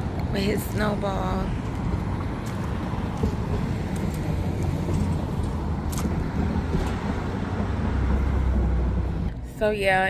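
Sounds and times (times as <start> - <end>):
vehicle engine and tyres passing: 0.0 - 10.0.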